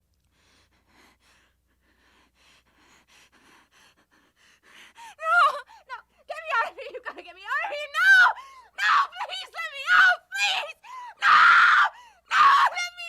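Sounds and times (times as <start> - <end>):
woman screaming: 5.2 - 5.7, 6.4 - 13.0.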